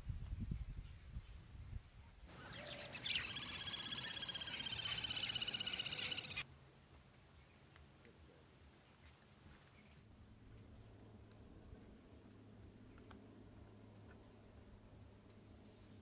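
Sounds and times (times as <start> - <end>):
steady high hiss: 2.2 - 9.7
fast high trilling animal call: 2.3 - 6.4.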